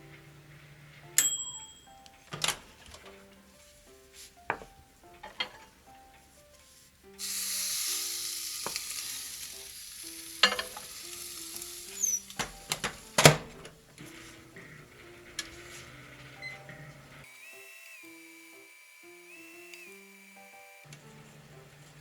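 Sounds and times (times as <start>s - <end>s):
faint background music: 0.0s - 22.0s
fish sizzling: 3.5s - 22.0s
dish clacks and knocks: 4.5s - 5.8s.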